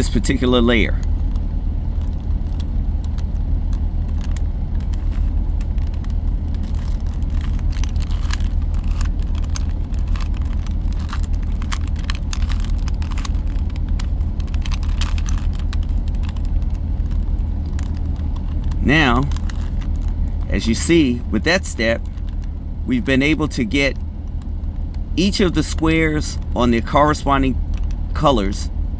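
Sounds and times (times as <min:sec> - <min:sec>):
steady low rumble: 0:00.0 - 0:28.9
puzzle cube plastic clicks: 0:02.0 - 0:21.0.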